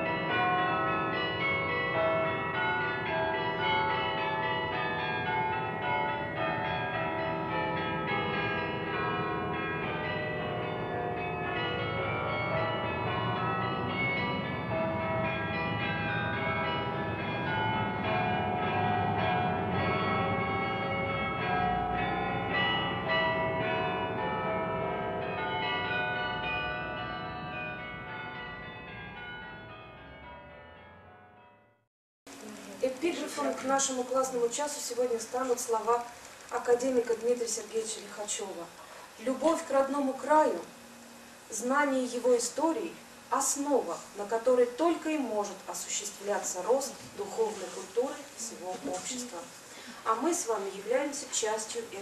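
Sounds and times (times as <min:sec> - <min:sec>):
church bells pealing: 0:00.0 - 0:31.8, 0:32.6 - 0:52.0.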